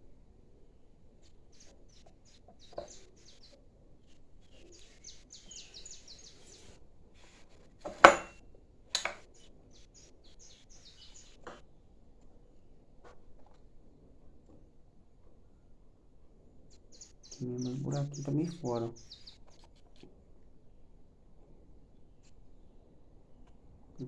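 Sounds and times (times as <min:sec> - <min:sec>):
small birds chirping: 0:01.1 - 0:08.4, 0:09.0 - 0:13.8, 0:16.4 - 0:20.6
sharp knocks on a bench: 0:07.9 - 0:08.4.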